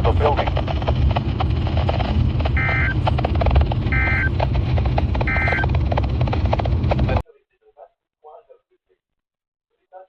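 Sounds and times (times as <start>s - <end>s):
radio static: 0.0s - 7.2s
steady rumble and crackle: 0.0s - 7.2s
data tone bursts: 2.6s - 3.1s, 3.9s - 4.4s, 5.2s - 5.7s.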